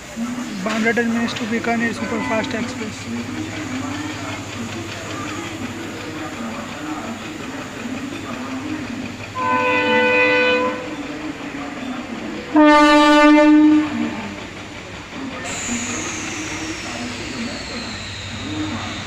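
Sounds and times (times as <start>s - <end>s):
train running noise: 0.0s - 19.0s
locomotive air horn blasts: 9.4s - 11.0s, 12.5s - 14.1s.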